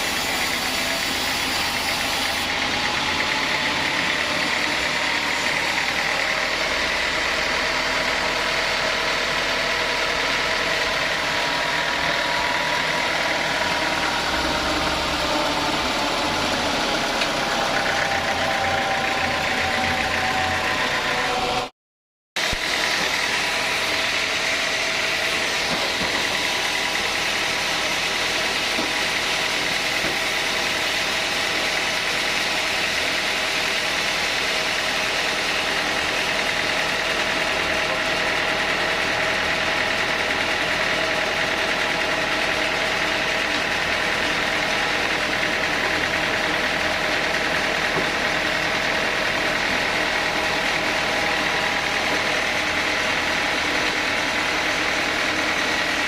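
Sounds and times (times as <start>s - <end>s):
sawmill saw machine drone: 0.0s - 21.7s, 22.4s - 56.0s.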